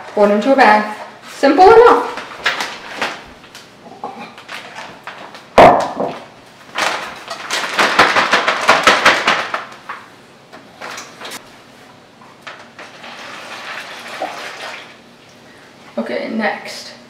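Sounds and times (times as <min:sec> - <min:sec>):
plastic bag crinkling: 0:06.7 - 0:10.0.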